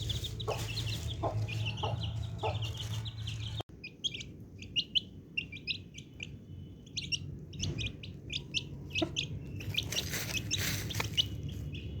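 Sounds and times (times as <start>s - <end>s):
baby chicks peeping: 0.0s - 12.0s
rustling noise: 9.6s - 11.6s.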